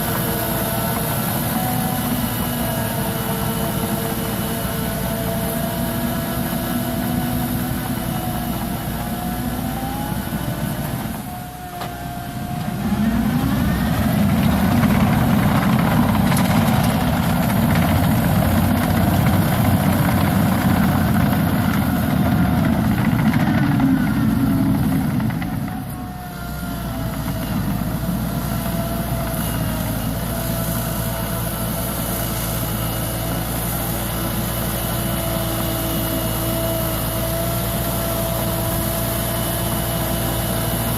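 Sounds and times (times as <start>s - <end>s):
bulldozer diesel engine running: 0.0s - 40.9s
engine whine: 0.0s - 40.9s.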